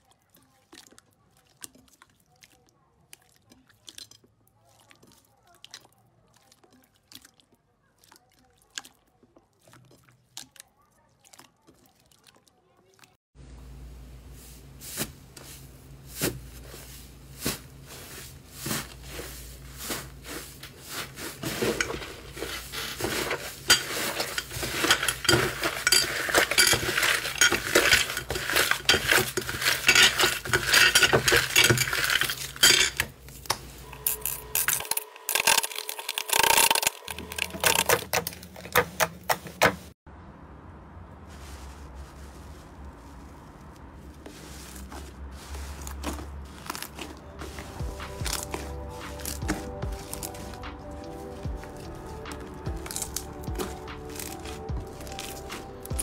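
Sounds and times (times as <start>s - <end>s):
slime clicking and crackling: 45.9s - 56.0s.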